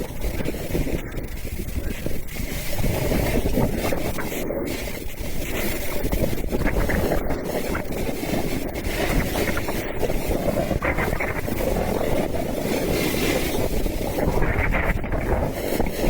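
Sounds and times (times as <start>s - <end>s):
skis scraping over snow: 0.0s - 16.0s
wind buffeting microphone: 0.0s - 16.0s.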